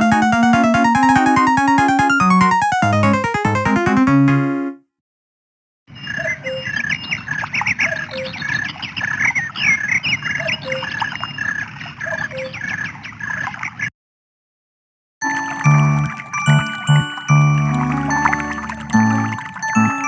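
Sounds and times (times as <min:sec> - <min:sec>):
melodic phone ringtone: 0:00.0 - 0:04.8, 0:15.2 - 0:20.0
birdsong ringtone: 0:15.2 - 0:20.0.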